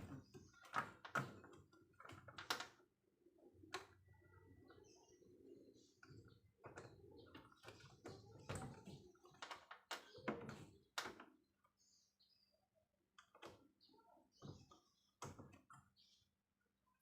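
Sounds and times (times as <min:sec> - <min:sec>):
small hard parts clicking: 0:00.0 - 0:02.8.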